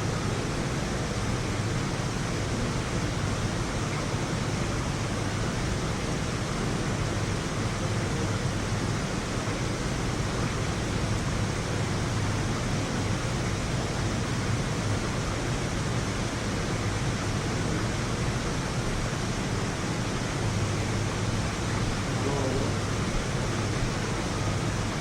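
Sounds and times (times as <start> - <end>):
steady rain hiss: 0.0 - 25.0.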